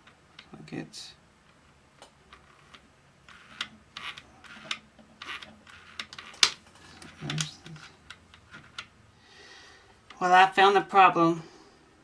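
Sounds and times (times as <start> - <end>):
plastic gears clicking: 2.3 - 9.0.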